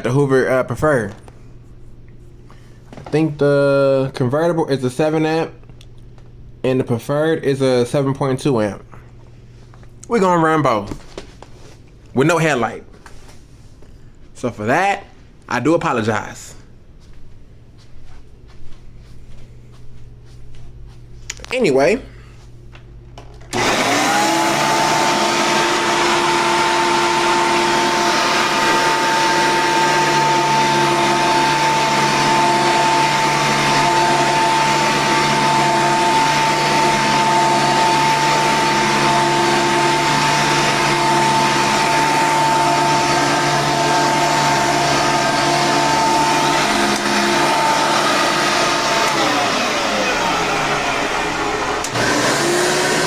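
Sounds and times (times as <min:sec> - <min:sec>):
vacuum cleaner motor whine: 0:23.4 - 0:53.0.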